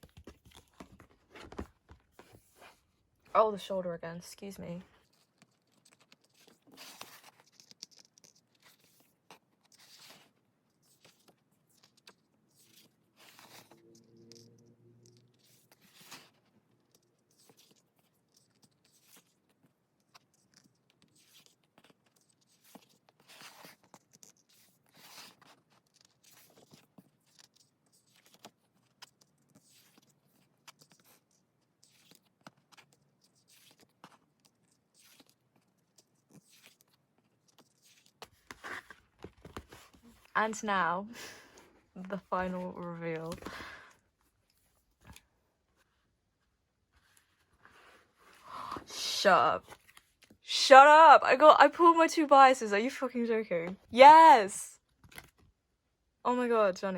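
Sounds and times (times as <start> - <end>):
stiff pages turning: 0.0 - 2.9, 5.0 - 40.3, 41.2 - 46.1, 49.6 - 50.4, 54.9 - 55.5.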